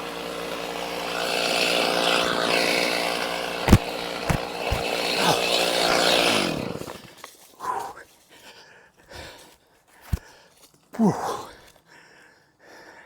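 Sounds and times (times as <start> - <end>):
chainsaw engine winding down: 0.0 - 7.2.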